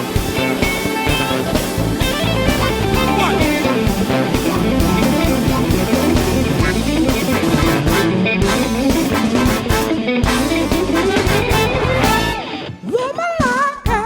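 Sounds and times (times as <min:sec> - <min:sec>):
drum beat: 0:00.0 - 0:12.5
bass guitar: 0:00.0 - 0:12.8
electric guitar: 0:00.0 - 0:14.0.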